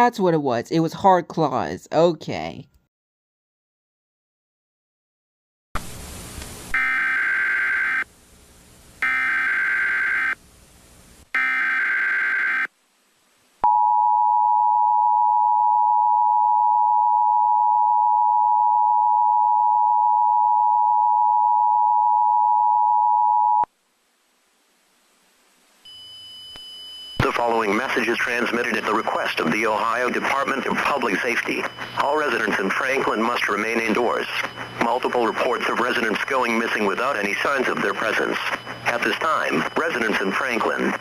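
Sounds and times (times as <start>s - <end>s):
two-tone attention signal: 25.9s - 41.0s
digital data bursts: 27.2s - 41.0s.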